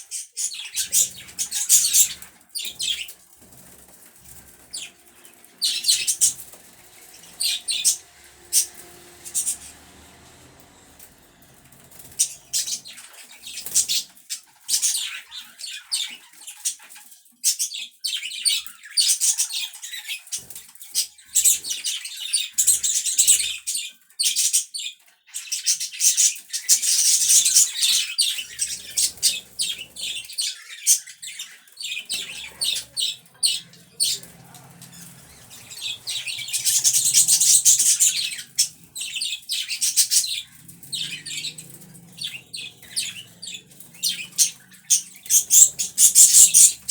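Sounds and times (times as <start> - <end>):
budgerigars chattering: 0.0 - 14.1, 31.3 - 46.9.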